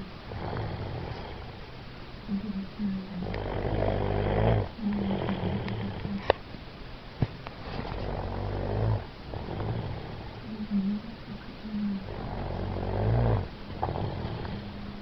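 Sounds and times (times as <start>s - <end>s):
man snoring: 0.3s - 1.6s, 3.2s - 6.1s, 8.0s - 10.4s, 12.0s - 14.8s.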